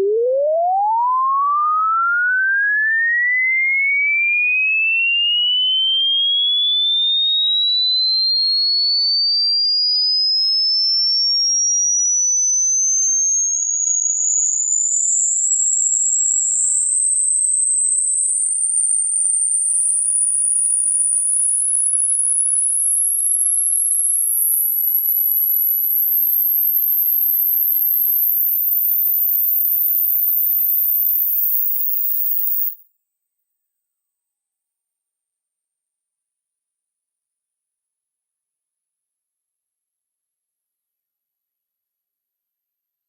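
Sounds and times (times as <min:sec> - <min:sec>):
rising sine test tone: 0:00.0 - 0:32.8.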